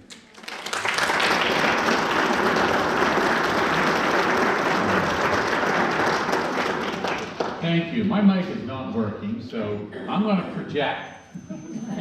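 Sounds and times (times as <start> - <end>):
audience applauding: 0.0 - 7.7.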